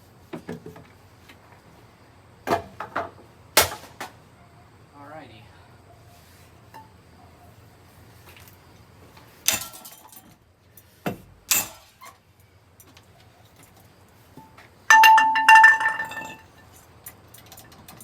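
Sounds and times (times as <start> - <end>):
low steady hum: 14.4 - 16.8
rapid clatter with ringing tone: 14.9 - 16.6.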